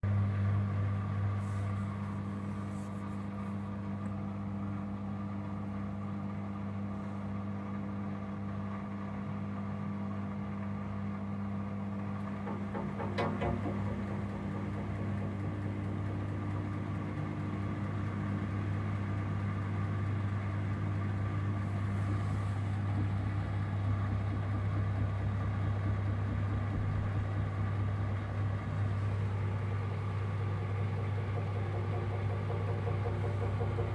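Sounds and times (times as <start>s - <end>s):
washing machine humming: 0.0s - 33.9s
washing machine rattling: 12.0s - 33.9s.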